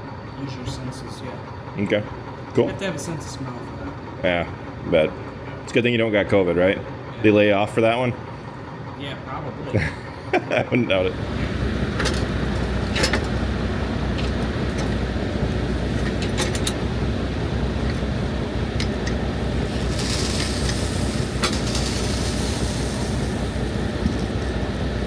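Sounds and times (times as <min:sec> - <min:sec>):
vehicle engine rumbling: 0:11.2 - 0:25.0.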